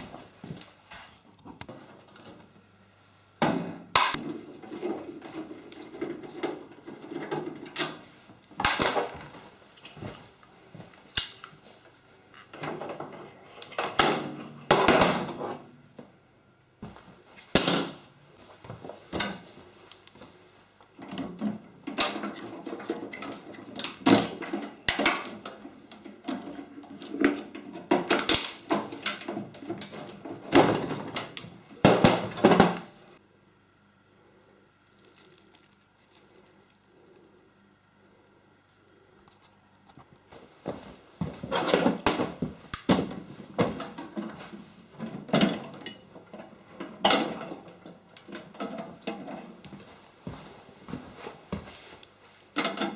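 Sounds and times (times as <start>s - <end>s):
hard objects knocking and rattling: 21.8s - 32.9s.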